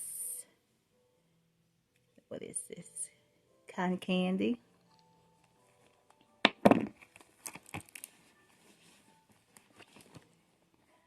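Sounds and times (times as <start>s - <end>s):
crinkling rustle in handbag: 7.0s - 10.4s.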